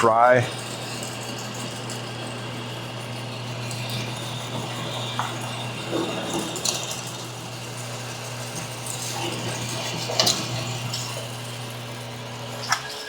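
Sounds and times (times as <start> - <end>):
drill press running: 0.0 - 13.0
clicks and scrapes: 3.6 - 11.3.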